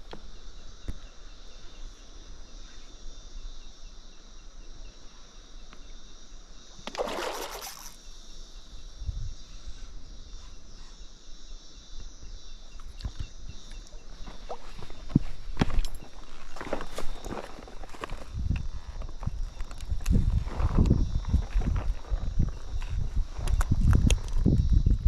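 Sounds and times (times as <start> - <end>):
high-pitched insect chorus: 0.0 - 25.0.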